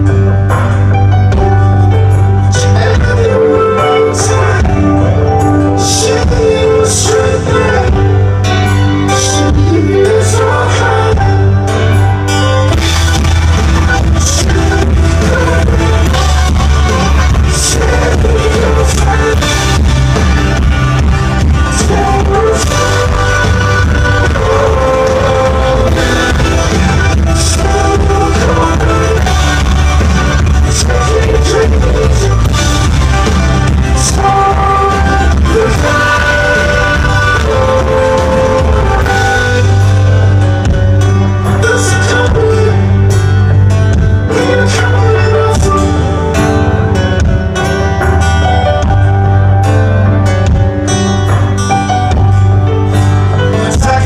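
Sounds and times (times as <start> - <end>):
live rock band playing: 0.0 - 54.0
person singing: 2.4 - 40.2, 41.4 - 43.5, 44.3 - 46.9, 53.3 - 54.0.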